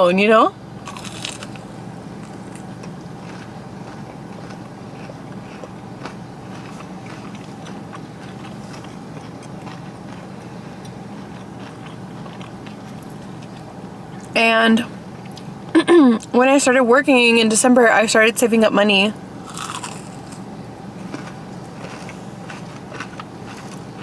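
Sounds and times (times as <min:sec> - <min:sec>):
steady low hum: 0:00.0 - 0:24.0
chewing with small crunches: 0:00.8 - 0:14.4, 0:19.4 - 0:24.0.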